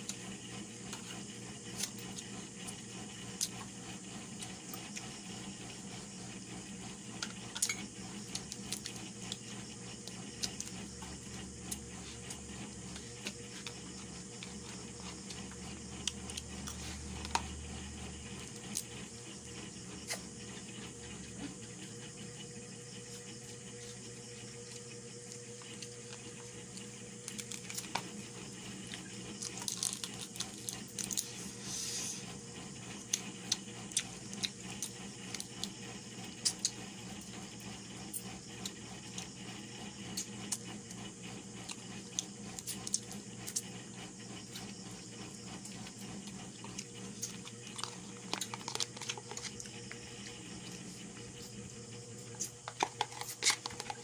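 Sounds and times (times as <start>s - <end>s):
chewing and crunching food: 0.0s - 54.0s
steady low hum: 0.0s - 54.0s.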